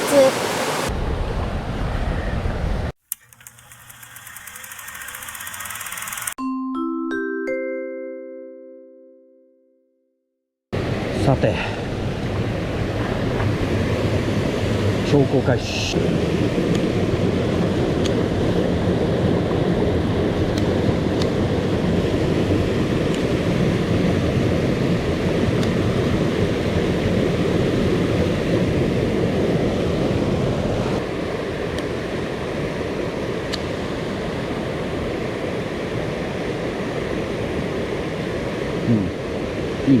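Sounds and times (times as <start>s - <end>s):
stream water rushing: 0.0s - 0.9s.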